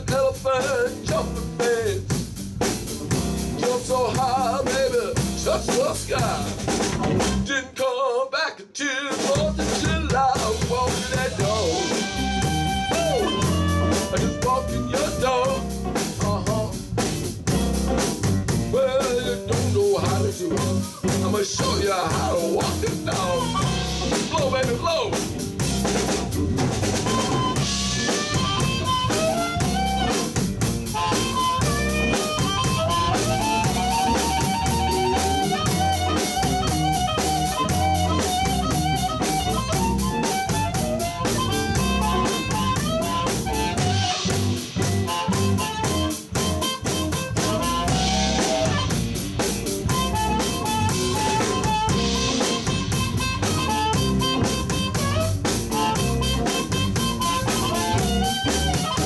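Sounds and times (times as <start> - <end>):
drum kit shuffle: 0.0 - 7.5, 9.1 - 59.0
bass guitar: 0.0 - 7.6, 9.4 - 59.0
electric guitar: 9.6 - 59.0
harmonica solo: 11.2 - 15.7, 22.9 - 24.6, 26.3 - 59.0.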